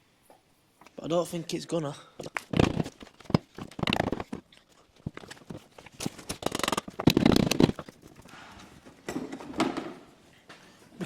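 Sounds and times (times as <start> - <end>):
rapid tool clicks: 5.1 - 8.0.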